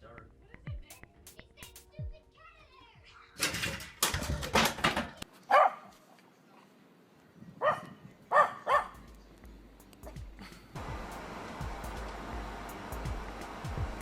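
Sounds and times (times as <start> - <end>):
dog barking: 5.5 - 6.0, 7.6 - 9.1.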